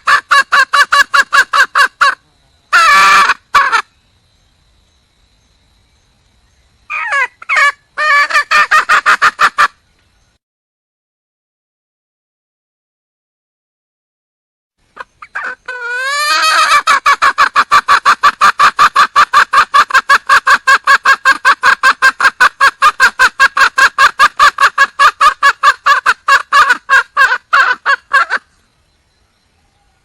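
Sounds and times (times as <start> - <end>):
junglefowl hen clucking: 0.0 - 3.9, 6.9 - 9.8, 15.0 - 28.5.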